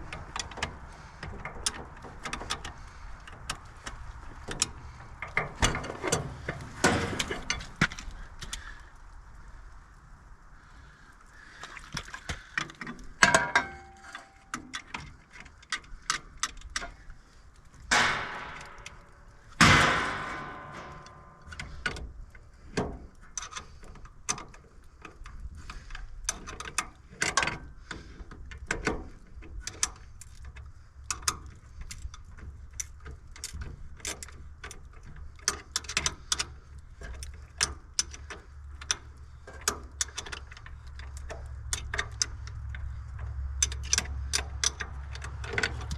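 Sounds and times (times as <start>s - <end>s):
hand tools clicking on metal: 12.6s - 17.0s, 22.8s - 45.9s
ringing metal clangs: 13.2s - 14.6s, 17.9s - 21.6s.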